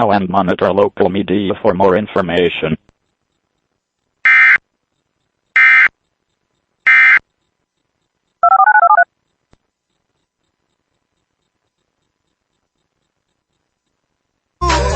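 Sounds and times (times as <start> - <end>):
digital data tone bursts: 5.6 - 5.9, 6.8 - 7.2, 8.4 - 9.1
dual-tone beeps: 8.4 - 9.1.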